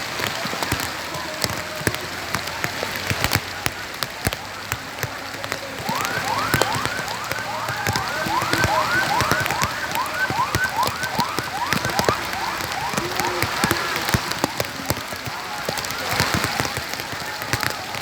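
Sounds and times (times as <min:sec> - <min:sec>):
rain pattering: 0:00.0 - 0:18.0
electronic siren whooping: 0:05.7 - 0:14.4.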